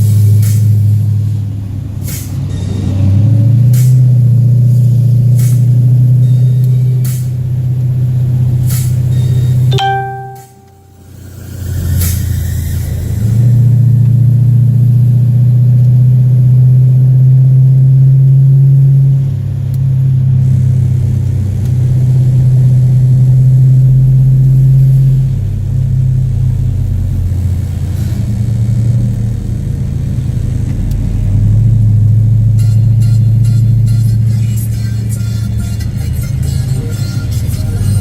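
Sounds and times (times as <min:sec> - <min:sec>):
vehicle engine droning: 0:00.0 - 0:38.0.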